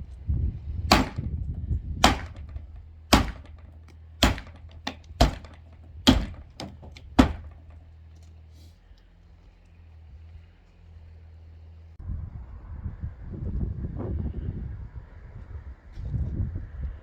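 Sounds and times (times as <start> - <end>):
steady low rumble: 0.0 - 7.8
heavy thuds on wooden frame: 0.9 - 7.8
smaller wooden knocks: 0.9 - 7.9.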